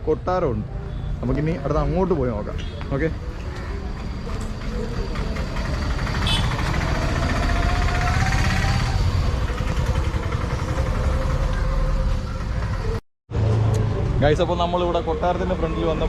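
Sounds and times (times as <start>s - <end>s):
vehicle engine running: 3.2s - 16.0s.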